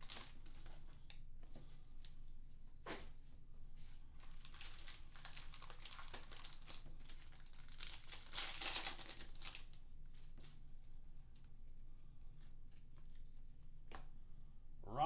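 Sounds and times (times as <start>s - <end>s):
card pack wrappers tearing: 4.3s - 9.7s.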